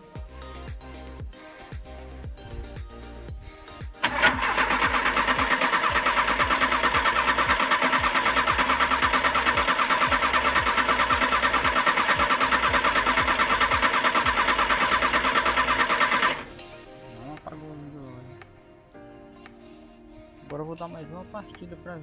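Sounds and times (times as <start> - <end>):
engine cranking without firing: 4.0 - 16.5.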